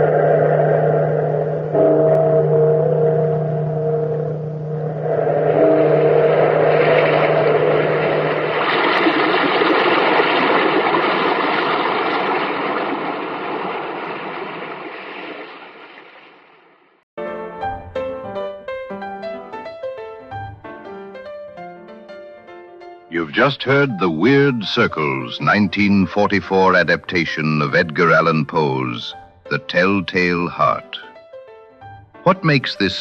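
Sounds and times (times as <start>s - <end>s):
large bell tolling: 0.0s - 8.7s
surf-like rushing noise: 4.8s - 15.8s.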